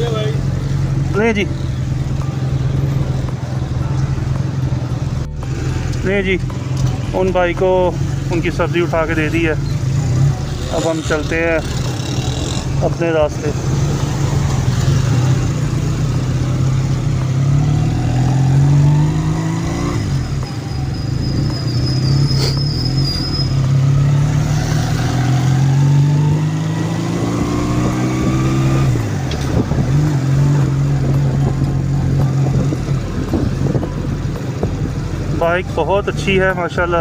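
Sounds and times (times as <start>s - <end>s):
motorcycle engine accelerating: 8.0s - 35.3s.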